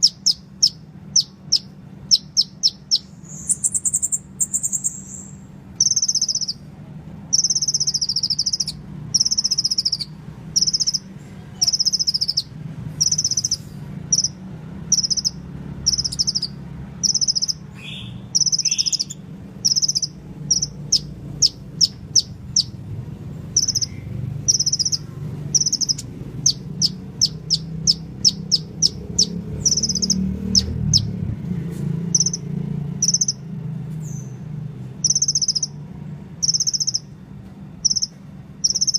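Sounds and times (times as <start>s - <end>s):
bird singing high thin notes: 0.0s - 6.6s, 7.3s - 22.7s
sharp ticking bird notes: 0.0s - 31.4s, 32.0s - 38.9s.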